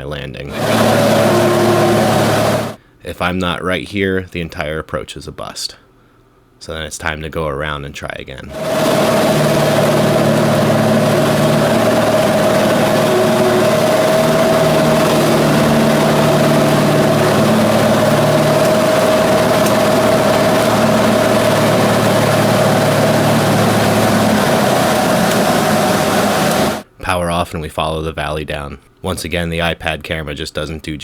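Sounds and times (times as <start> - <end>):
propeller plane engine drone: 0.5 - 2.8, 8.5 - 26.8.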